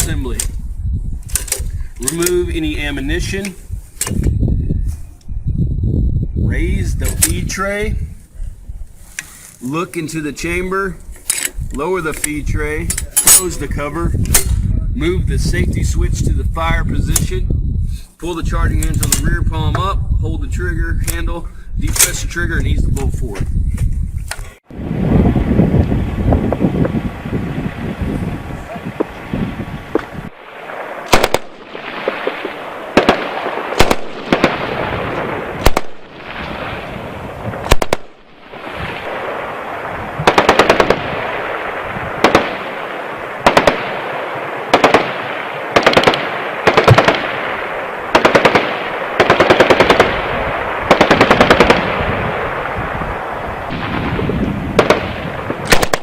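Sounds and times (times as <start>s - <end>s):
machine gun firing bursts: 31.1s - 34.8s, 40.2s - 41.4s, 42.2s - 42.8s, 43.4s - 52.1s, 54.8s - 56.0s.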